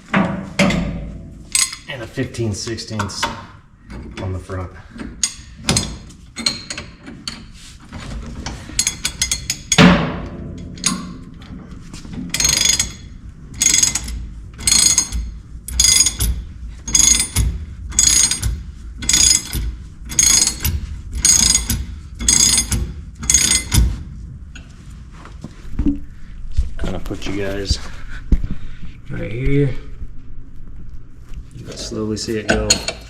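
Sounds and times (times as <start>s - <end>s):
ratchet wrench clicking: 13.6s - 16.3s, 16.9s - 23.8s.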